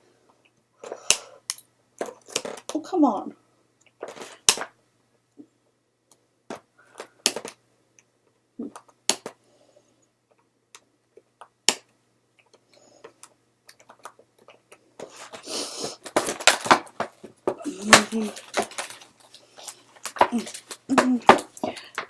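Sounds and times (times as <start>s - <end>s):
packaging rustling and crinkling: 15.0s - 22.0s.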